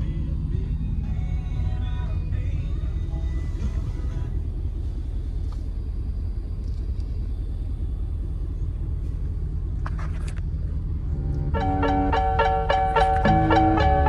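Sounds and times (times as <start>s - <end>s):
plucked-string music: 11.5s - 14.0s.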